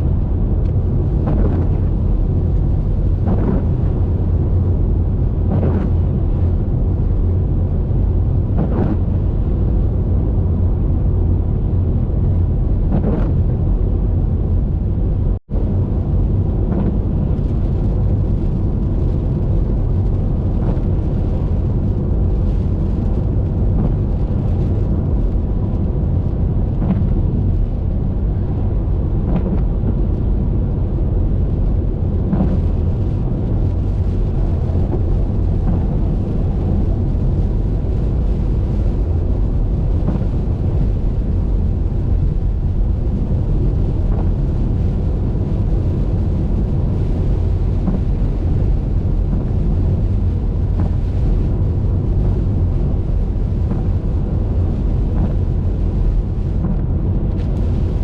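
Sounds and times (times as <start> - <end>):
car road and wind noise: 0.0 - 58.0
faint crackles: 31.4 - 58.0.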